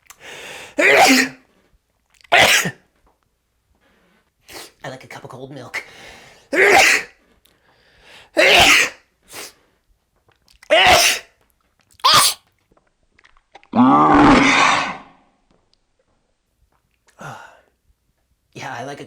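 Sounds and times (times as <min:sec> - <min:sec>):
man sneezing: 0:00.8 - 0:01.4, 0:02.3 - 0:02.8, 0:06.5 - 0:07.2, 0:08.4 - 0:09.5, 0:10.7 - 0:11.3, 0:12.0 - 0:12.4.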